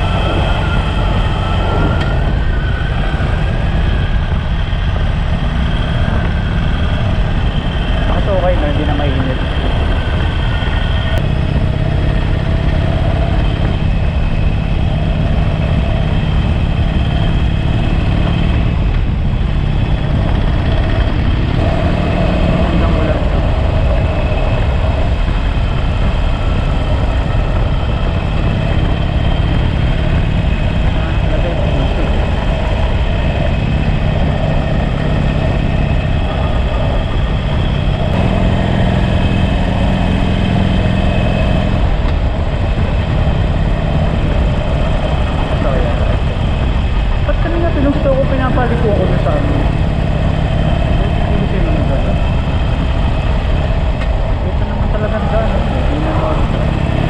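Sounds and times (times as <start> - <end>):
motorcycle engine revving: 0.0 - 57.0
wind rumble: 0.0 - 57.0.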